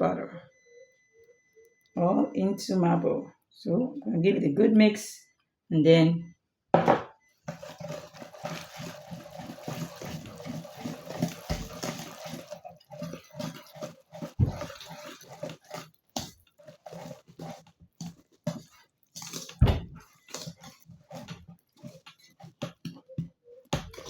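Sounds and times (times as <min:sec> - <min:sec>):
batter sloshing and scraping: 0:07.4 - 0:24.0.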